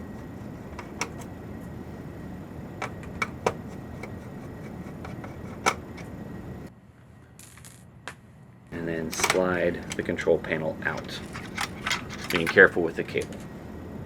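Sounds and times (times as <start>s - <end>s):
screwdriver clicks and taps on metal: 0.8s - 1.3s, 2.8s - 6.1s, 11.0s - 12.8s.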